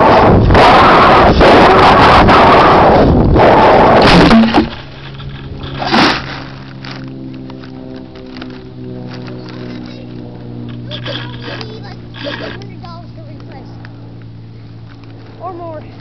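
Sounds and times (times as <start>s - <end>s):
wind rushing over camera: 0.0s - 8.8s
steady low tones: 0.0s - 16.0s
knocks and scrapes: 4.0s - 6.9s.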